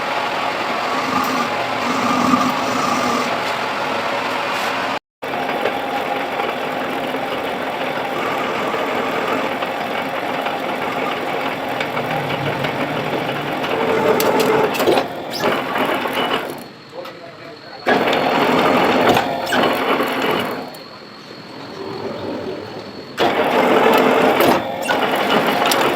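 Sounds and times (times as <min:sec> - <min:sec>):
metal lathe clattering: 0:06.6 - 0:16.6, 0:17.9 - 0:25.9.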